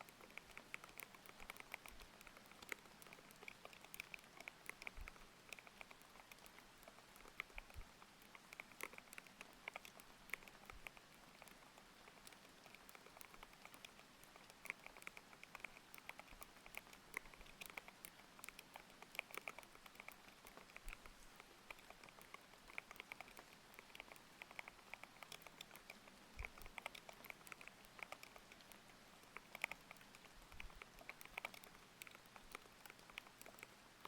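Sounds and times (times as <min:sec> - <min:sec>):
mechanical keyboard typing: 0:00.0 - 0:33.8.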